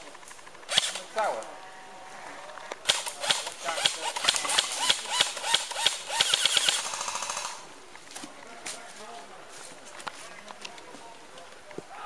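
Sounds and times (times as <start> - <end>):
airsoft full-auto burst: 0.7 - 1.1, 2.8 - 7.6.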